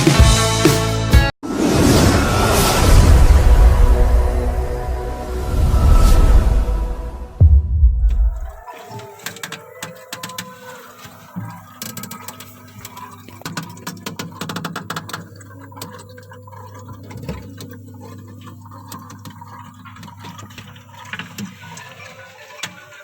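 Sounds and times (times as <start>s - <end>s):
gurgling trickling water in fridge: 8.3s - 23.0s.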